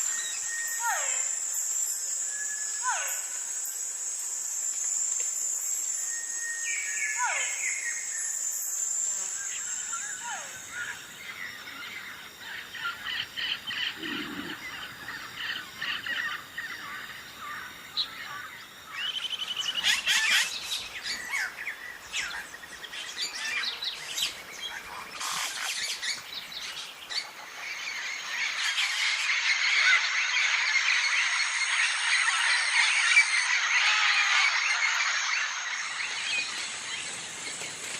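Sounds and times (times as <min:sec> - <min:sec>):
small birds chirping: 0:09.1 - 0:27.4.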